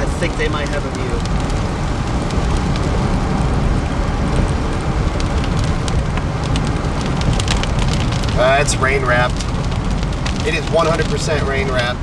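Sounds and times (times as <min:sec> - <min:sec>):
raindrops ticking on vehicle: 0:00.0 - 0:12.0
wind and road noise rumble: 0:00.0 - 0:12.0.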